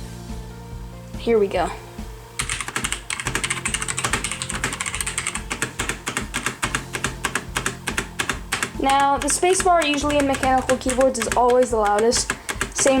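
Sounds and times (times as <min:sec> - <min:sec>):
fast typing on mechanical keyboard: 0:02.4 - 0:13.0.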